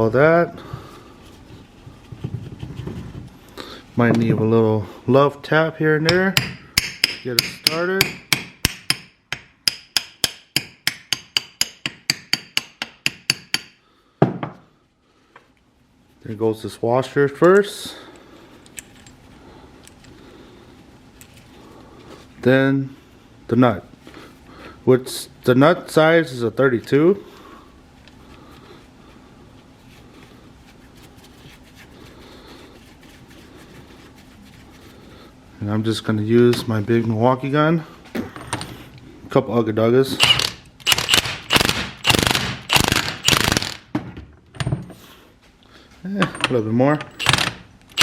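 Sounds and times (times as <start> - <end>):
faint steady hum: 0.0 - 48.0
hammer tapping metal: 6.1 - 13.8.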